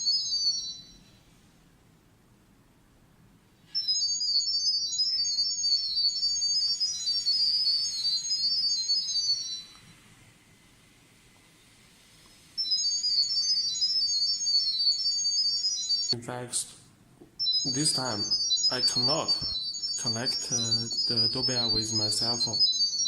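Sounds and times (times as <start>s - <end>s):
short high-pitched electronic beeps: 3.7s - 9.8s, 17.4s - 23.0s.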